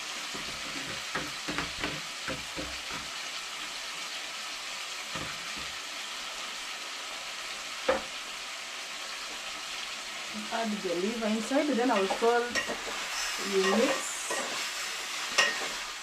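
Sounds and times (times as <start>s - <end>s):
food sizzling in hot oil: 0.0s - 16.0s
utensil knocking while stirring: 0.4s - 3.1s.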